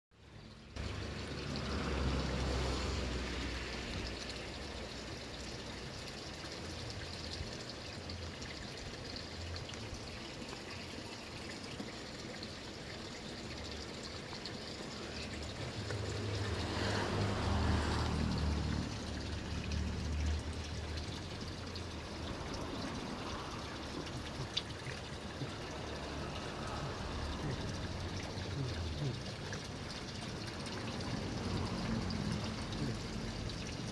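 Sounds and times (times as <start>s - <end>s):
water trickling: 0.1s - 33.9s.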